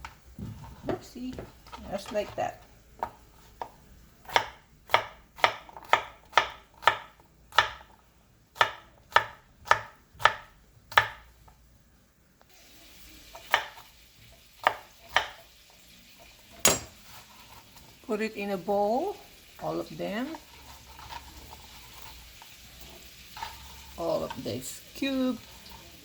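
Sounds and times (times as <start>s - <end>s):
knife chopping on cutting board: 4.3s - 7.9s, 8.6s - 11.2s, 13.5s - 13.8s, 14.6s - 15.4s, 16.6s - 17.2s.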